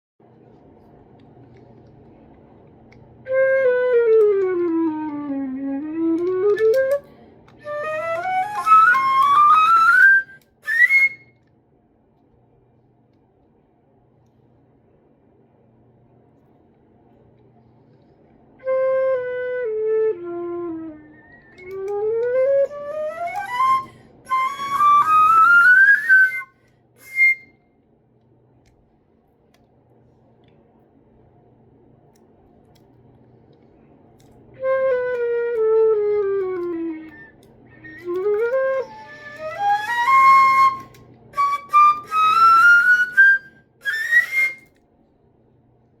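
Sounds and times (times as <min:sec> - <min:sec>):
flute notes and runs: 0:03.2 - 0:11.4, 0:18.6 - 0:27.5, 0:34.5 - 0:44.7.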